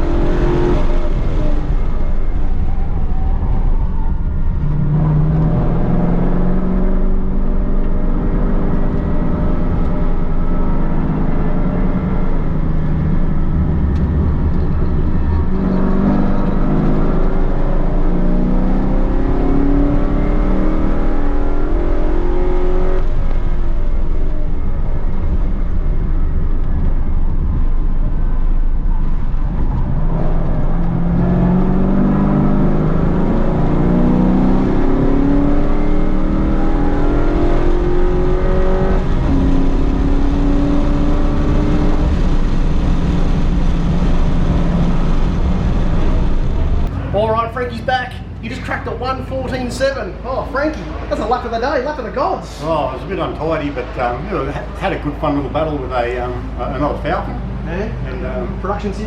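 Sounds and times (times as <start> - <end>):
car engine revving on track: 0.0 - 47.1.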